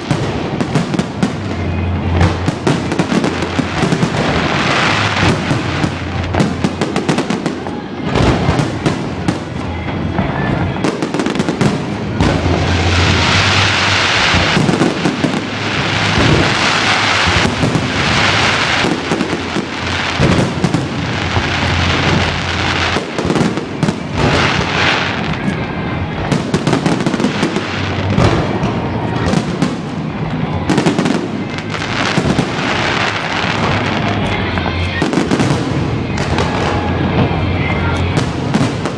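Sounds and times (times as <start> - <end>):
fireworks bangs: 0.0 - 38.9
fireworks crackling: 0.0 - 38.9.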